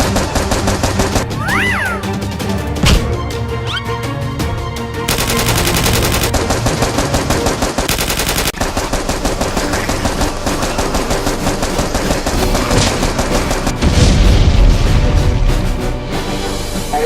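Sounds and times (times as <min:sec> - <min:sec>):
rapid automatic gunfire: 0:00.0 - 0:01.3, 0:05.1 - 0:13.9.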